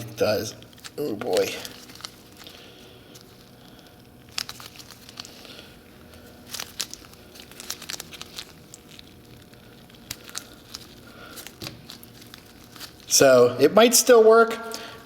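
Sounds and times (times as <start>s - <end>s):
dry putty crackling and tearing: 0.0s - 13.3s.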